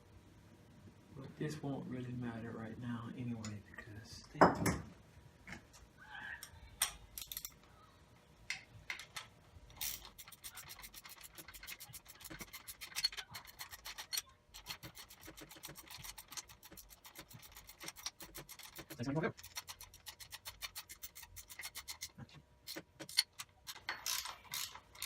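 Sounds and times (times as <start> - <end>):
hand ratchet clicking: 9.8 - 25.0.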